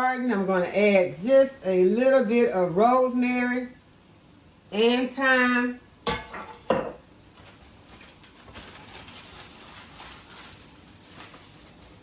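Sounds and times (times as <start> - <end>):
herbs rustling and ticking: 7.5 - 12.0.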